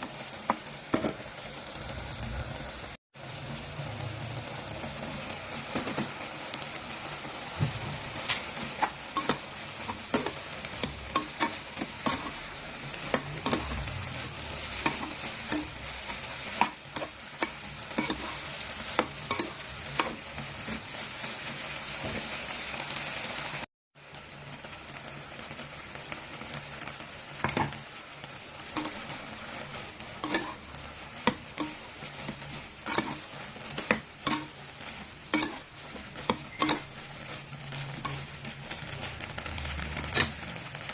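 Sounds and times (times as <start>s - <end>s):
shrimp sizzling in oil: 0.0s - 40.9s
utensil clicking against pan: 35.3s - 37.0s.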